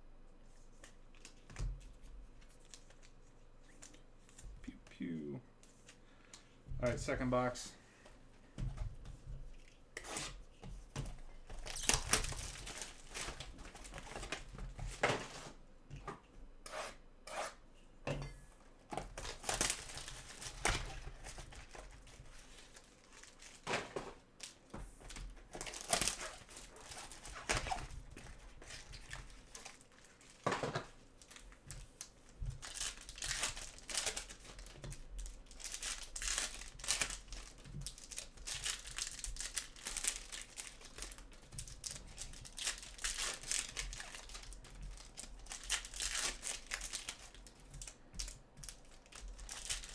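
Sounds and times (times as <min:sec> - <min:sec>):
plastic wrapping crinkling and tearing: 0:11.4 - 0:15.4, 0:19.1 - 0:49.9.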